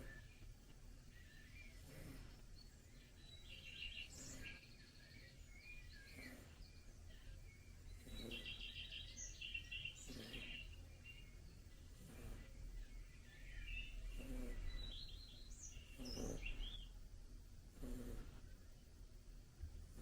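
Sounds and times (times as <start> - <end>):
puppy snoring faintly: 0.0 - 0.4, 1.6 - 4.7, 5.8 - 7.2, 7.9 - 17.0, 17.6 - 18.6, 19.6 - 20.0
songbirds chirping and trilling: 0.0 - 20.0.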